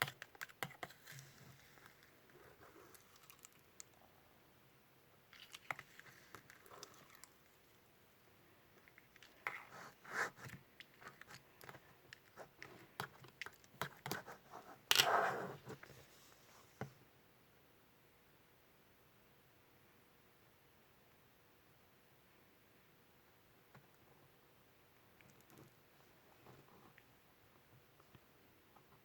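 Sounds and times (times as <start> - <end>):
slime squish: 0.0 - 4.0, 5.3 - 7.8.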